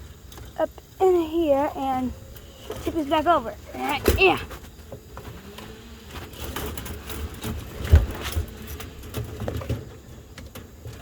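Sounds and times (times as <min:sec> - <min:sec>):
knocking and rustling: 0:02.6 - 0:11.0.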